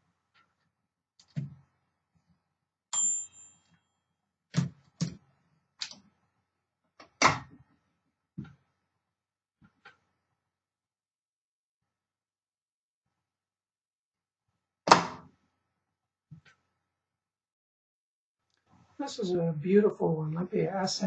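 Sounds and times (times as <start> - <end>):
typewriter bell ding: 3.0 - 3.7.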